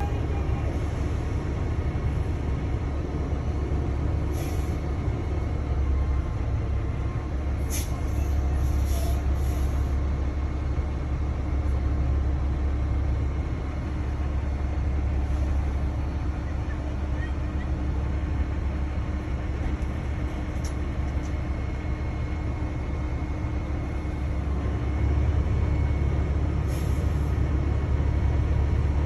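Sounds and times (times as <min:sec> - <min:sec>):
road vehicle rumble: 0:00.0 - 0:29.0
brief hisses: 0:07.7 - 0:09.9.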